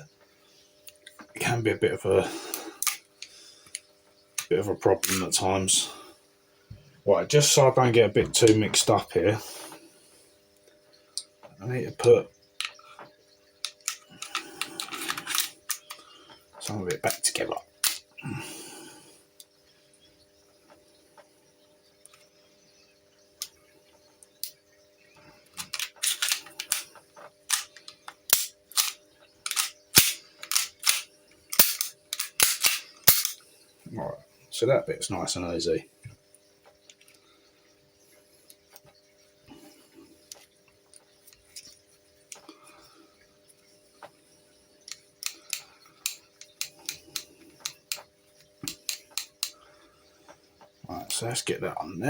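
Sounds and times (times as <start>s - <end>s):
pistol parts clicking together: 5.0s - 5.2s, 13.6s - 16.0s, 17.8s - 18.0s, 25.6s - 26.9s, 27.5s - 33.4s, 44.9s - 49.6s.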